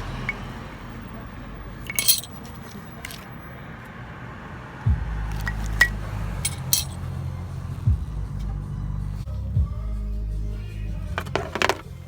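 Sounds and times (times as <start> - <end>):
metal hardware clinking: 1.9 - 3.3, 5.8 - 7.0
background music with deep bass: 4.9 - 12.0.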